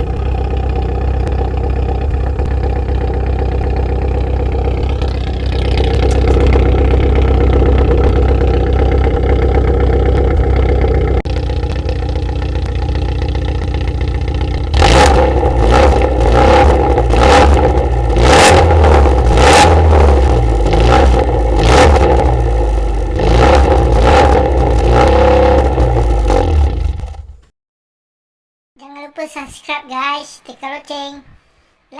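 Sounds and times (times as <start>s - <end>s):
car engine loud drone: 0.0s - 27.5s
engine throttle blips: 0.0s - 27.5s.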